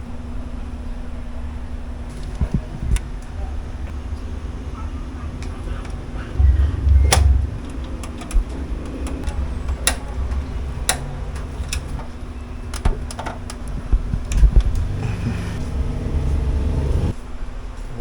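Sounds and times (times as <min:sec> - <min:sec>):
low rumble: 0:00.3 - 0:17.2
clicks of hard parts being fitted: 0:07.1 - 0:14.9.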